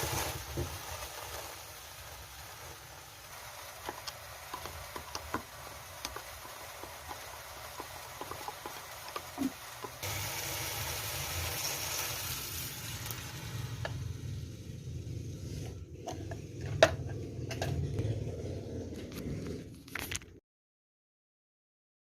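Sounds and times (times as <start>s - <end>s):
food sizzling in oil: 0.0s - 15.7s.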